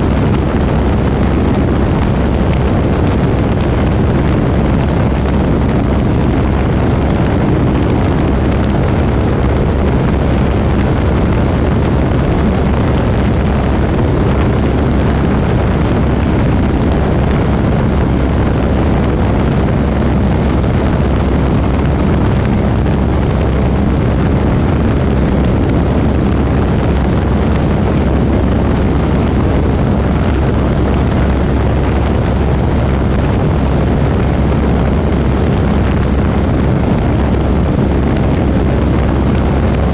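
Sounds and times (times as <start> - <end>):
propeller airplane engine running: 0.0 - 39.9.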